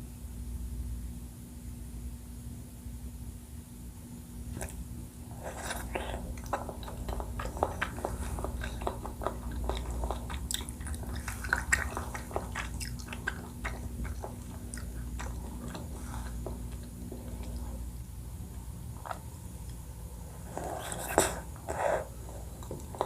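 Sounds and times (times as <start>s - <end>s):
close chewing mouth clicks: 4.5s - 18.0s, 20.6s - 23.0s.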